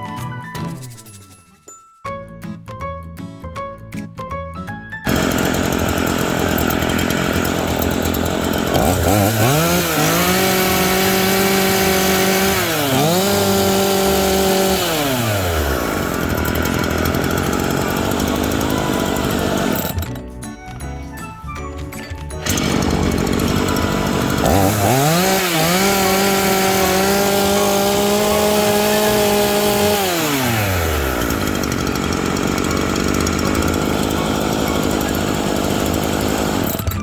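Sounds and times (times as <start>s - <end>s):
background music: 0.0s - 5.1s, 17.7s - 30.3s
chainsaw revving and idling: 5.1s - 20.2s, 22.4s - 37.0s.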